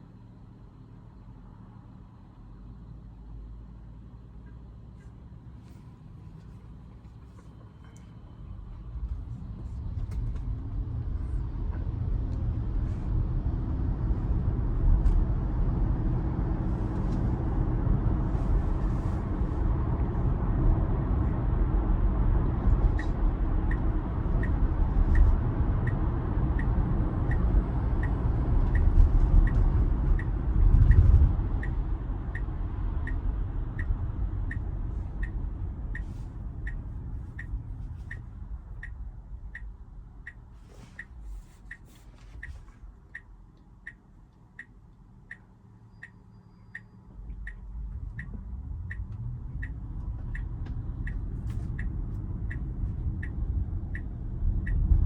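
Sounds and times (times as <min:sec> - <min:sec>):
road and tyre rumble: 0:00.0 - 0:55.0
turn signal ticking: 0:13.5 - 0:55.0.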